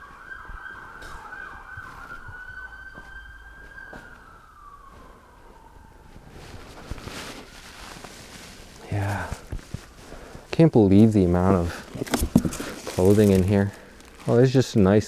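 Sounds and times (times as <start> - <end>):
emergency siren wailing: 0.0 - 6.4.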